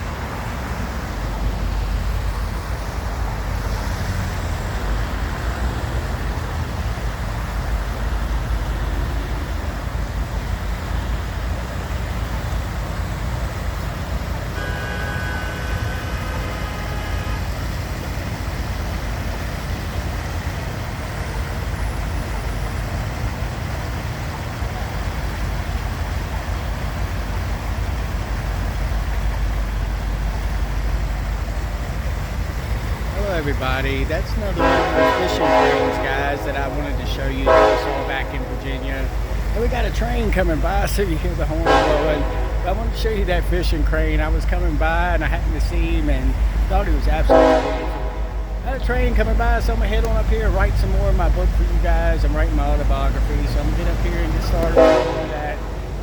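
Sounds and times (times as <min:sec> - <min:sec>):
train rumbling past: 0:00.0 - 0:56.0
chord of tones: 0:33.2 - 0:56.0.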